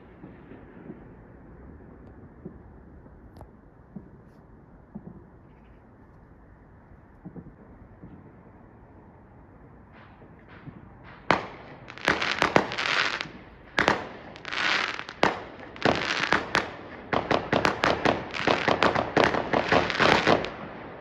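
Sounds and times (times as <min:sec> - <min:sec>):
fireworks bangs: 0:00.0 - 0:05.9, 0:07.2 - 0:08.7, 0:09.6 - 0:21.0
fireworks crackling hiss: 0:09.9 - 0:20.6.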